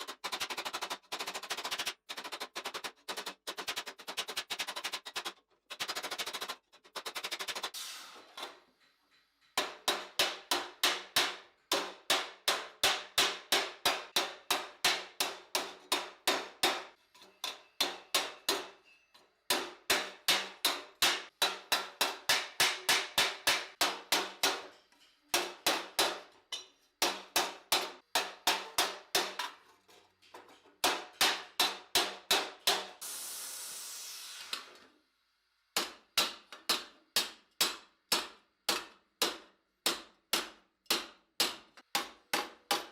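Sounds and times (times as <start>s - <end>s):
hiss: 7.5s - 8.4s, 32.7s - 34.9s.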